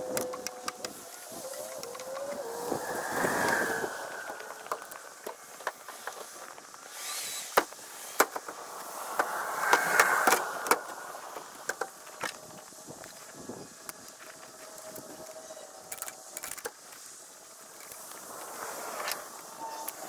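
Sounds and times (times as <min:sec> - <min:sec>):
rough mechanical noise: 0:00.0 - 0:13.0.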